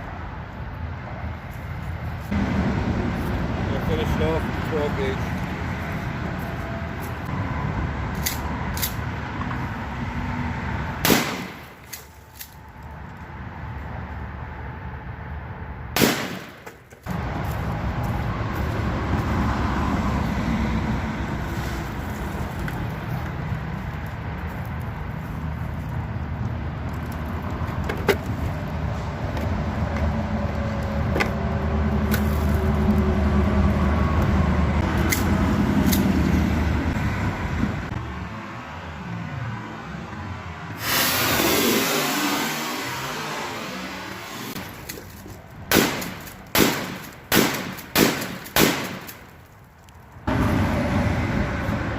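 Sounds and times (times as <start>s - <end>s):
shotgun blasts: 11.0s - 11.8s, 16.0s - 16.7s, 45.7s - 49.2s.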